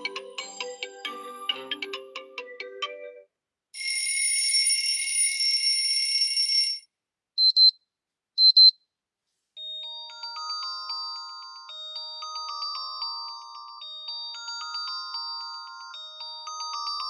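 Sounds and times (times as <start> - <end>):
chiming ringtone melody: 0.0 - 6.8, 9.6 - 17.0
short double beeps: 7.4 - 7.8, 8.4 - 8.8.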